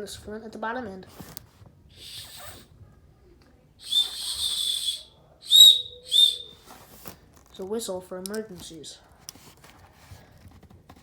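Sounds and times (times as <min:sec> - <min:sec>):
whistle blasts: 0:02.0 - 0:02.6, 0:03.8 - 0:06.6.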